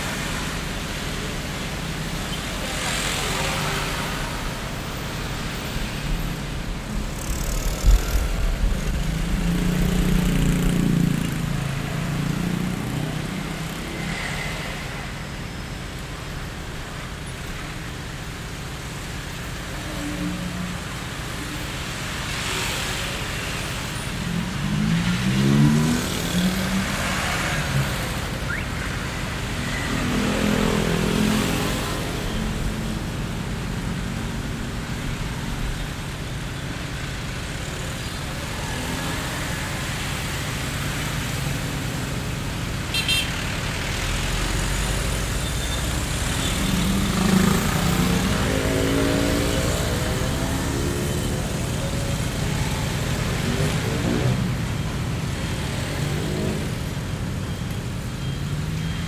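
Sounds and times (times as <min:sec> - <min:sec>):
cars passing: 0:00.0 - 0:59.0
road traffic rumble: 0:00.0 - 0:59.0.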